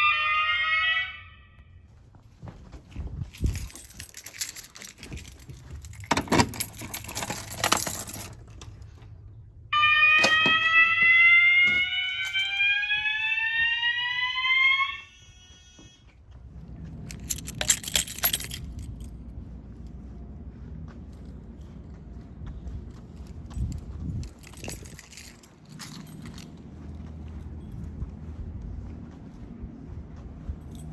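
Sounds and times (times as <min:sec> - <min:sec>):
fire alarm horn whoop: 0:00.0 - 0:01.8, 0:09.7 - 0:16.0
rustling and clicking: 0:02.3 - 0:09.1, 0:22.9 - 0:27.2.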